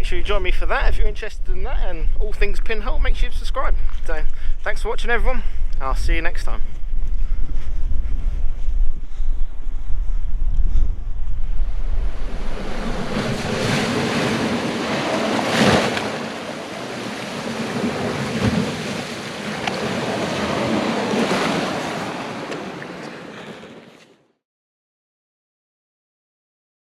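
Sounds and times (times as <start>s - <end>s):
wind buffeting microphone: 0.0s - 22.7s
waves breaking on shingle beach: 12.0s - 24.0s.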